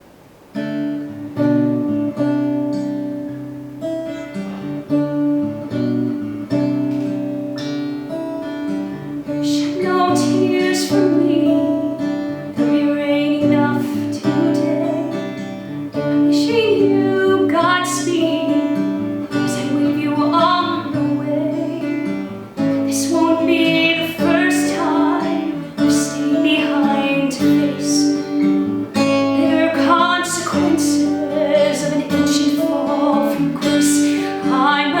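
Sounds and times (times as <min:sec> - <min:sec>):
acoustic guitar picking: 0:00.0 - 0:35.0
woman singing: 0:09.2 - 0:35.0.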